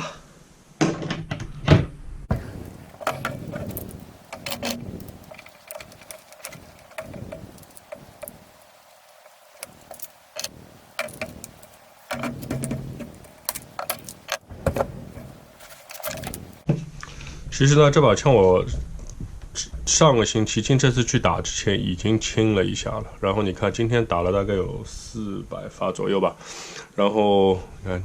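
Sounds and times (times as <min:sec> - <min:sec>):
metallic clicks of rifle parts: 0:02.3 - 0:16.6.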